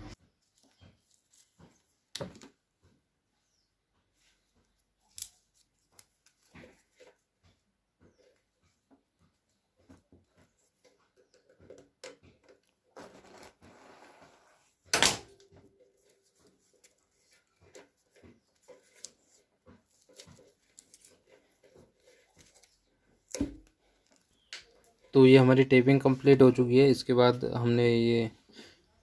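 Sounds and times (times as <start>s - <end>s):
tape ripping off roll: 13.0s - 15.3s.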